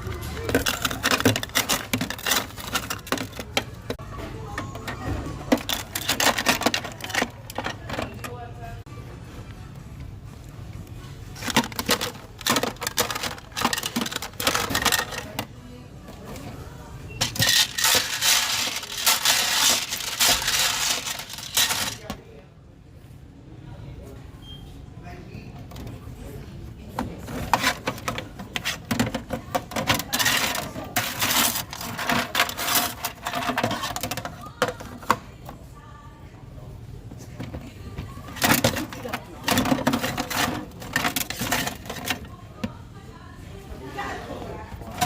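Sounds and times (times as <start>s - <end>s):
candy wrapper crackling: 17.4s - 22.0s.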